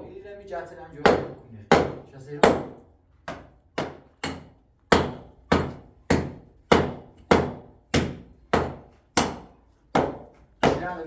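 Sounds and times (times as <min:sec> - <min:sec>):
hammer striking hard material: 0:01.0 - 0:11.0.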